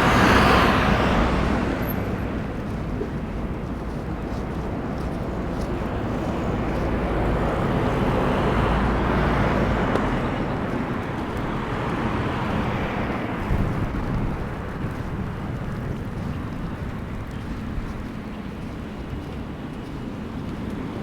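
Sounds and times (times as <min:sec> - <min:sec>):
vehicle passing: 0:00.0 - 0:04.5, 0:05.2 - 0:17.5.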